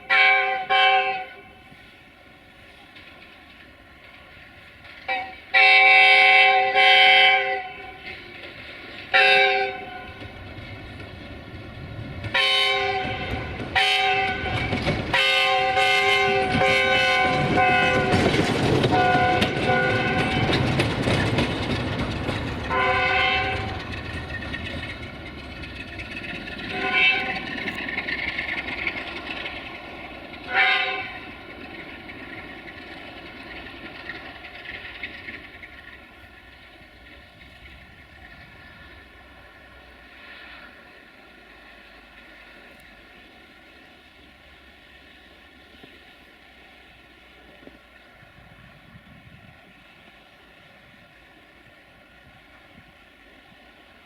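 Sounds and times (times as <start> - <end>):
locomotive horn blasts: 0.0 - 1.7, 5.1 - 8.1, 9.1 - 10.2, 12.3 - 20.6, 22.7 - 23.8, 26.7 - 27.5, 30.5 - 31.3
train wheels on rails: 0.0 - 54.0
diesel engine rumble: 10.1 - 40.1.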